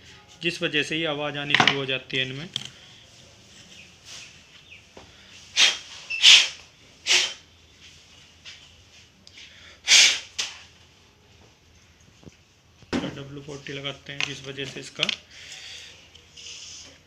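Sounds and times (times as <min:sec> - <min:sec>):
hissing puffs of air: 0:05.3 - 0:07.5, 0:09.6 - 0:10.4.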